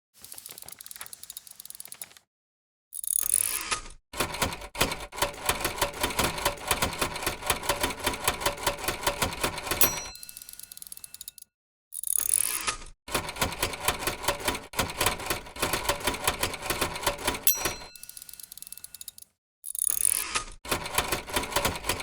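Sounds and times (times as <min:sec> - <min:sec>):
typewriter keys clicking: 0:00.2 - 0:02.2, 0:04.2 - 0:10.6, 0:13.1 - 0:19.2, 0:20.7 - 0:22.0.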